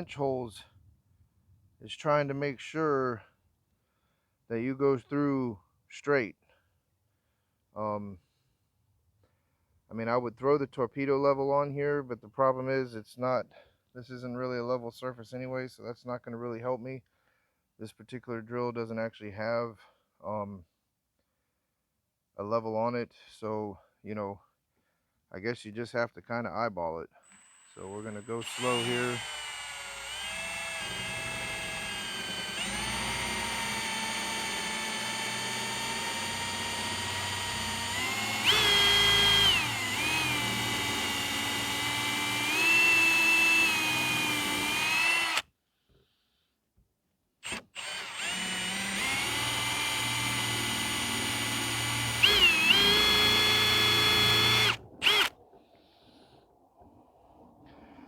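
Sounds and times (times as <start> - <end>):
power drill boring wood: 27.2 - 45.4, 47.4 - 55.3.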